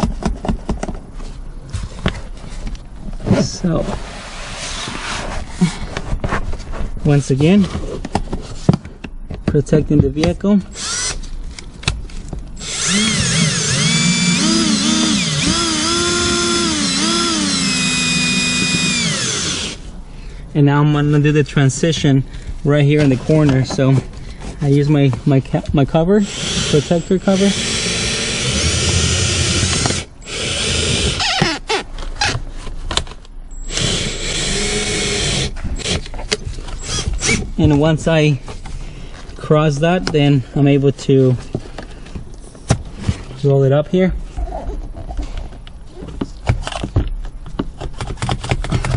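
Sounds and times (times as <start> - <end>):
cordless drill motor whine: 10.7 - 11.2, 12.6 - 19.8, 26.3 - 31.5, 33.6 - 36.0.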